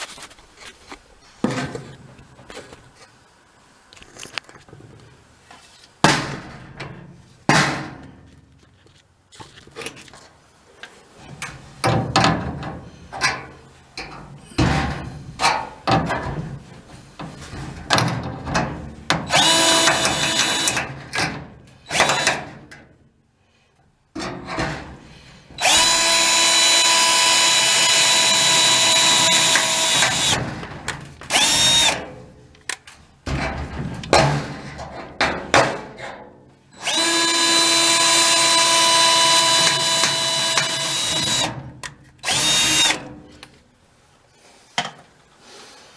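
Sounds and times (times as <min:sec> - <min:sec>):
parts being handled: 0:00.0 - 0:03.2
power drill running: 0:19.3 - 0:20.8, 0:21.9 - 0:22.3, 0:25.6 - 0:30.4, 0:31.3 - 0:32.0, 0:36.8 - 0:41.5, 0:42.2 - 0:43.1.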